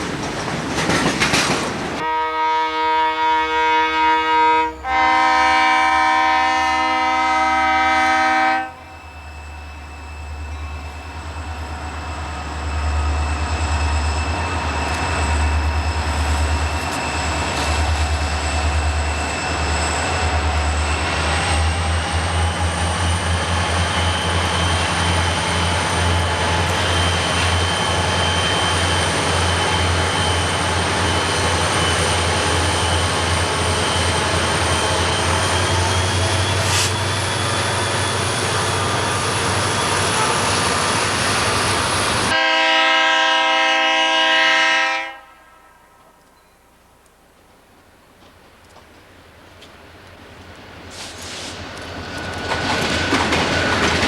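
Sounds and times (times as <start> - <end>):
locomotive air horn: 2.0 - 9.6, 40.0 - 40.8, 42.3 - 46.2.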